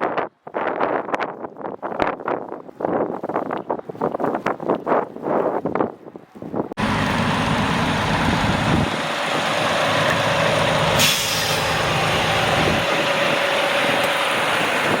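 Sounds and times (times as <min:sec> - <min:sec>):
wind: 0:00.0 - 0:15.0
road noise: 0:06.2 - 0:15.0
large vehicle engine running: 0:06.8 - 0:15.0
sharp hiss: 0:10.9 - 0:11.8.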